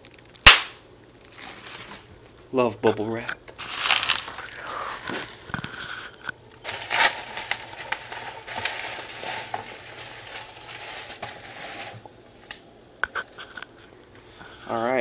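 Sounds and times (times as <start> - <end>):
bubble wrap crinkling: 0.0 - 2.5, 3.6 - 12.6.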